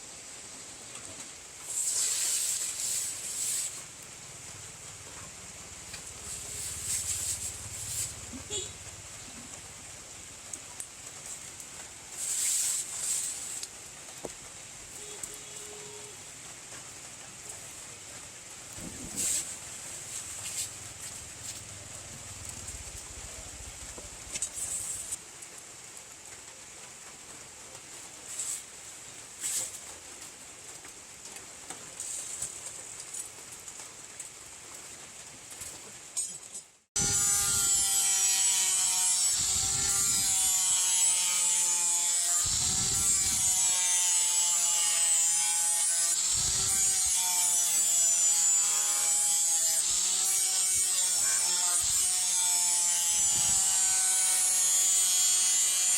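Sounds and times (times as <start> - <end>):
electric power tool motor running: 37.0 - 44.6, 46.1 - 55.9.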